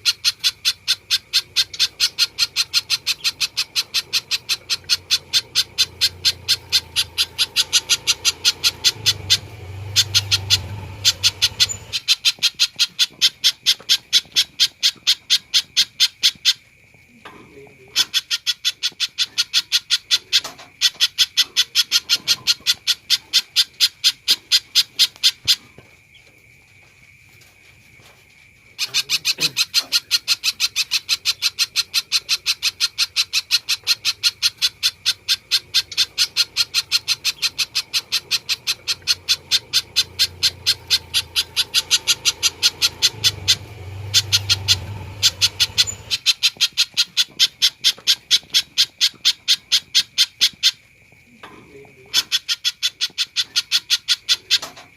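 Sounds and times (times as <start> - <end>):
bird calling in sharp high notes: 0.0 - 12.9.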